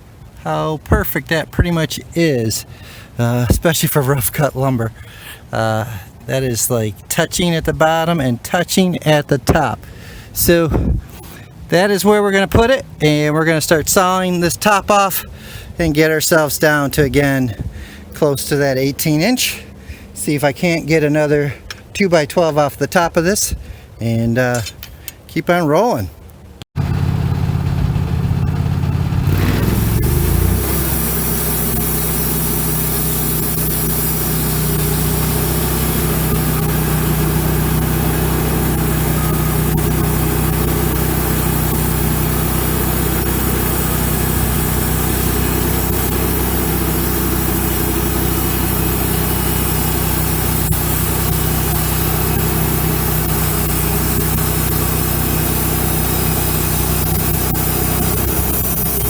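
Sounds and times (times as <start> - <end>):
small engine running: 26.8 - 59.0
bandsaw sawing wood: 29.2 - 59.0.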